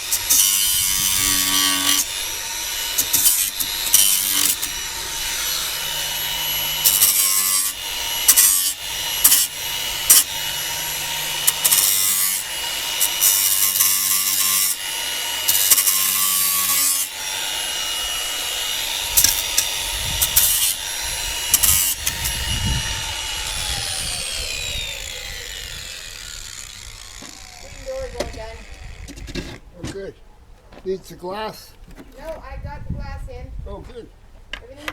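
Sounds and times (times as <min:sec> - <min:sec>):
power tool grinding metal: 0:00.0 - 0:29.7.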